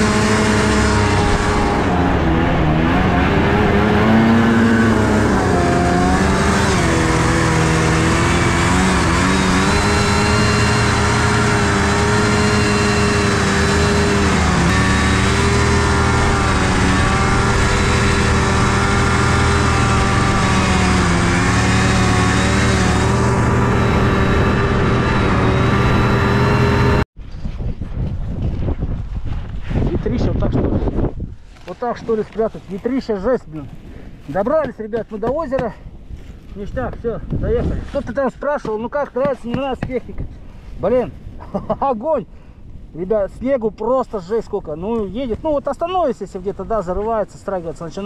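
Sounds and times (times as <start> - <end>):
snowmobile engine running: 0.0 - 27.0.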